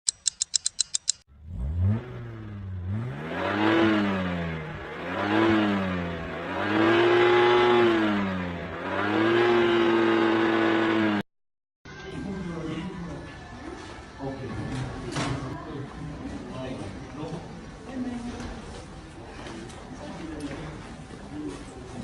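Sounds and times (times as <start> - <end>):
engine revving: 1.3 - 11.2.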